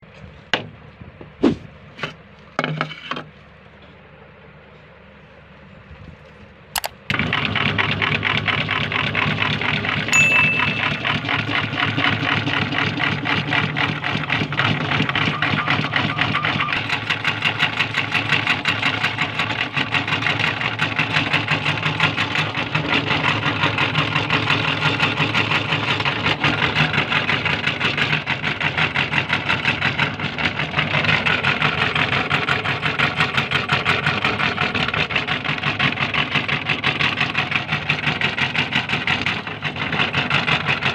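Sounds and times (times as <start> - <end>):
high ping: 10.2 - 11.4.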